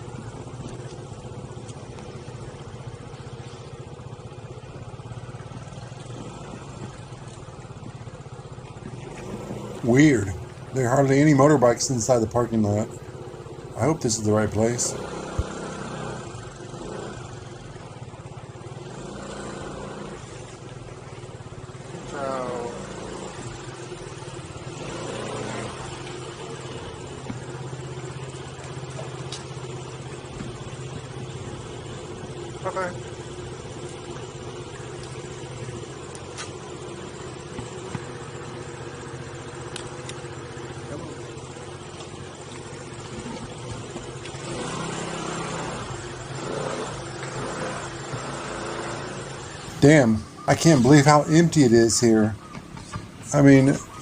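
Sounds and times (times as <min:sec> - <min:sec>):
motorbike engine idling: 0:00.0 - 0:54.0.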